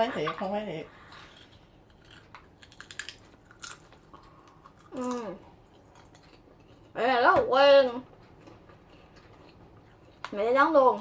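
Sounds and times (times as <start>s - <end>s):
crunchy snack chewing: 1.1s - 6.9s.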